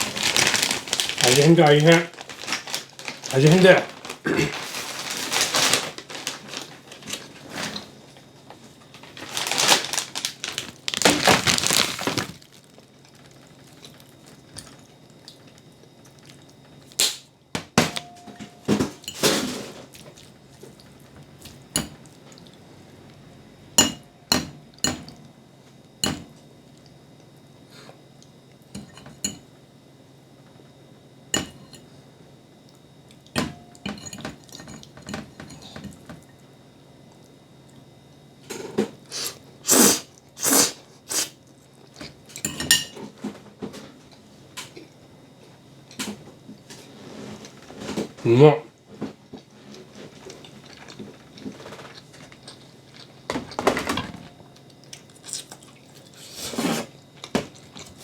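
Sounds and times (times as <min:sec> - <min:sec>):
cutlery clinking on a plate: 0:42.3 - 0:43.1.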